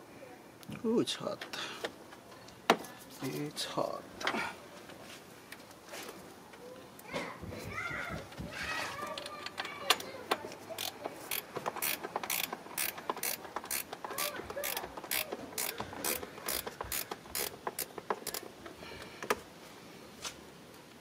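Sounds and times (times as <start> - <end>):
ratchet wrench clicking: 10.8 - 18.5.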